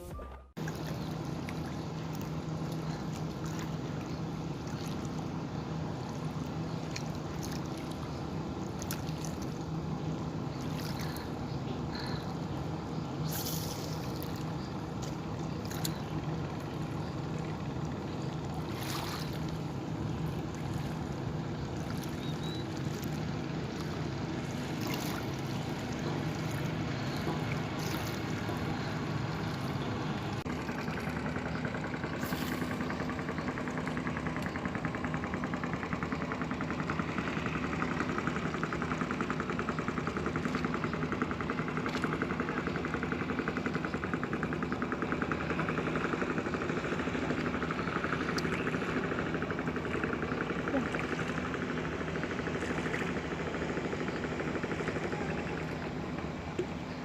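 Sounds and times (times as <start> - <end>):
boat engine chugging: 0.0 - 57.0
water trickling and splashing: 0.6 - 34.7.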